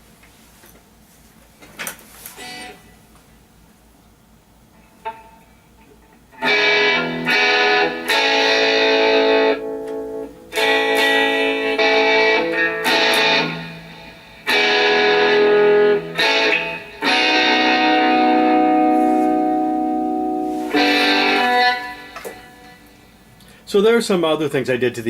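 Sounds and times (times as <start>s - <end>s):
electric guitar chords ringing: 4.8s - 23.6s.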